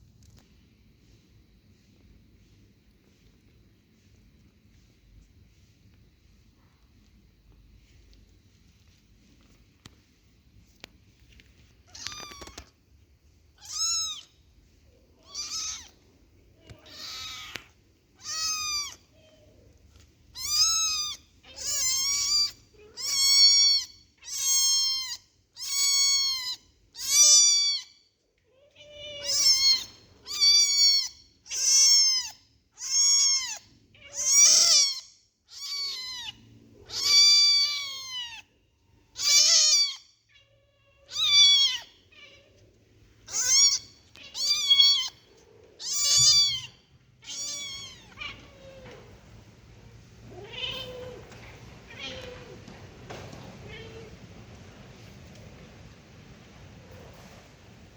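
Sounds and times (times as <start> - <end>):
kitten mewing: 15.2 - 15.9.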